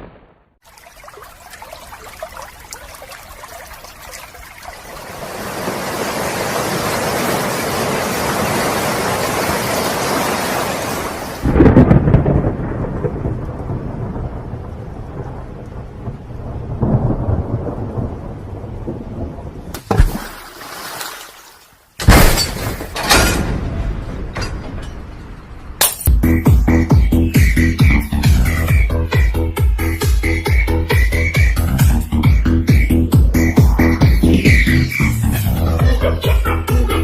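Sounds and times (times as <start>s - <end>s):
heavy rain: 0.0s - 19.7s
thunder: 11.4s - 19.7s.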